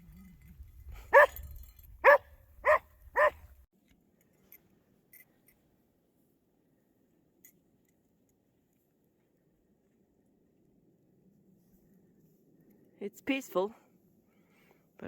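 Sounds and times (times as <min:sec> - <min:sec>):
dog barking: 0:01.1 - 0:01.4, 0:02.0 - 0:03.4.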